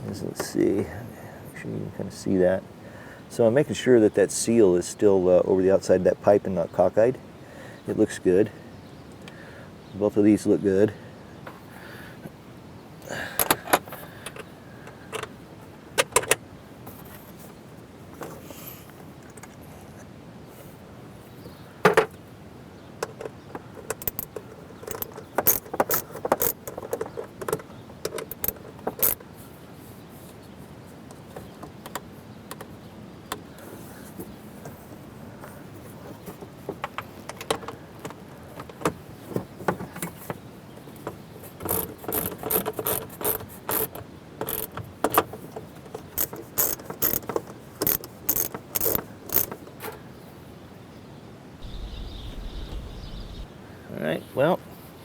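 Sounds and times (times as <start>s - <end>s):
ratchet wrench clicking: 24.9s - 26.6s, 28.3s - 29.2s, 44.5s - 44.7s, 46.2s - 49.6s.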